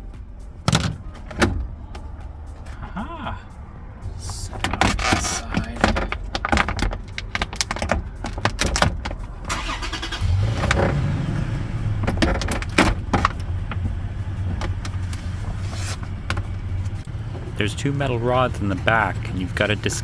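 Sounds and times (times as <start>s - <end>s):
low vehicle rumble: 0.0s - 20.0s
clicks and knocks on plastic trim: 4.5s - 9.4s, 12.0s - 17.1s.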